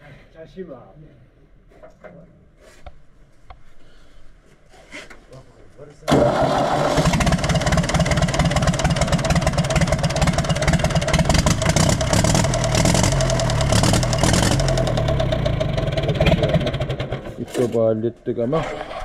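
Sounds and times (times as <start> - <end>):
diesel engine idling: 6.2 - 17.3
engine knocking: 7.0 - 17.4.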